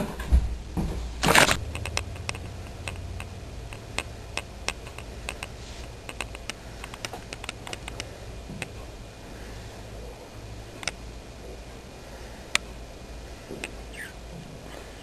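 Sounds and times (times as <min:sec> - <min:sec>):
steady low hum: 0:00.0 - 0:15.0
light clicks and ticks: 0:01.7 - 0:08.8.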